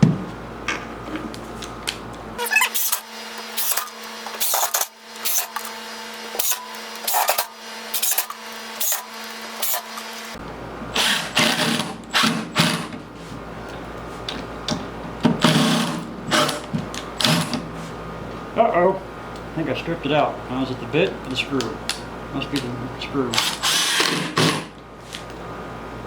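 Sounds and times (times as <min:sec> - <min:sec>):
screw gun driving screws: 0:02.4 - 0:10.4, 0:23.4 - 0:24.7
screw gun motor whine: 0:02.4 - 0:10.4, 0:23.4 - 0:24.6.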